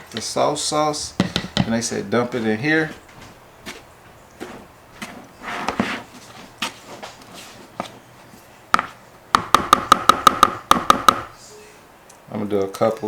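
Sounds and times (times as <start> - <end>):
utensil knocking against bowl: 1.2 - 1.8.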